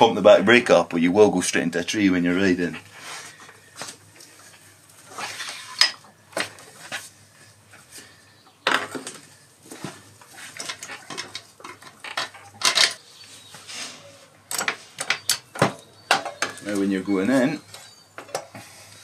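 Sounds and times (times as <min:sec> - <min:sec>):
metal tools clinking: 0:10.5 - 0:13.0.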